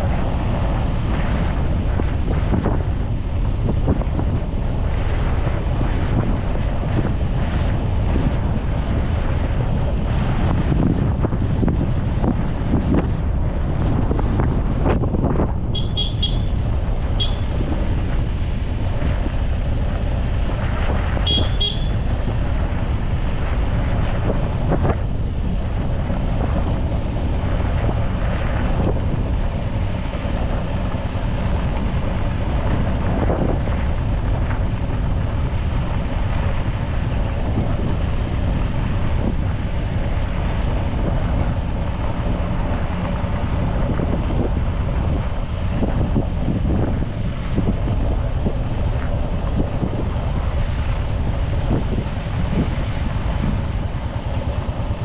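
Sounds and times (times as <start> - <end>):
road traffic rumble: 0.0 - 55.0
wind buffeting microphone: 0.0 - 55.0
short high-pitched toots: 15.8 - 16.5, 21.3 - 22.0.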